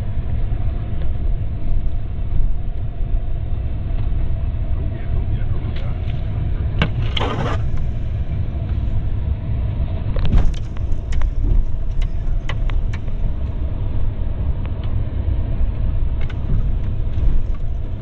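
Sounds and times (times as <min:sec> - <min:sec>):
engine and tyres rumbling: 0:00.0 - 0:18.0
vehicle knocks and rattles: 0:05.8 - 0:15.1, 0:16.2 - 0:18.0.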